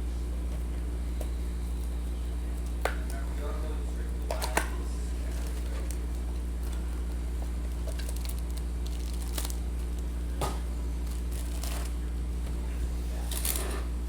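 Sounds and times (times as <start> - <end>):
steady low hum: 0.0 - 14.0
wrappers crackling and tearing: 5.1 - 10.2, 11.0 - 12.1, 13.2 - 13.9.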